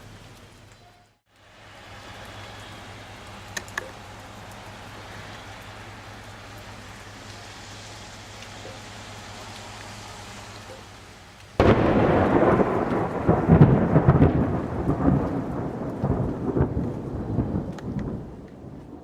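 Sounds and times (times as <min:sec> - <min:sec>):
steady rain: 0:00.0 - 0:19.0
thunder clap and rumble: 0:11.5 - 0:19.0.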